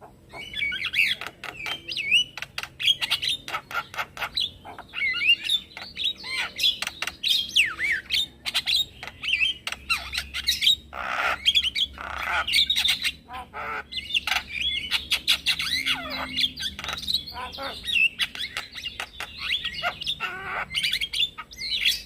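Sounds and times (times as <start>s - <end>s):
bird rasping squawks: 7.8s - 22.0s.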